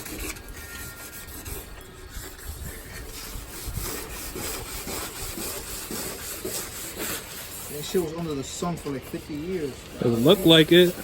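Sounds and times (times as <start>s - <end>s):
wet sandpaper rubbing: 0.0s - 11.0s.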